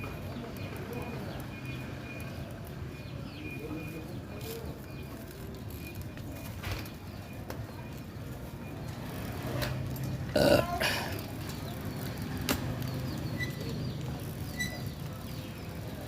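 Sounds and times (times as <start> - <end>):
throaty burp: 10.3 - 11.2.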